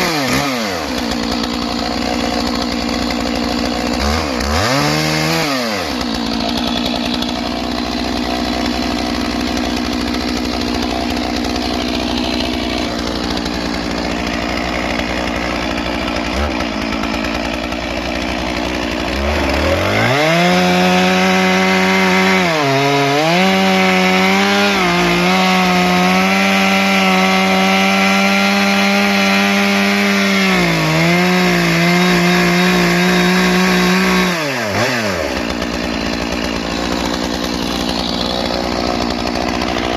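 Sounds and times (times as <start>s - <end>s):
chainsaw cutting: 0.0s - 39.9s.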